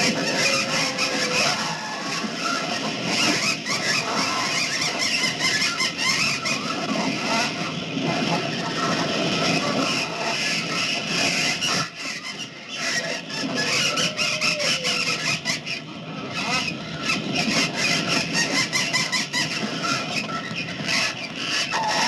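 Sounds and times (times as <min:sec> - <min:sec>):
birds screeching and squealing: 0:00.0 - 0:22.0.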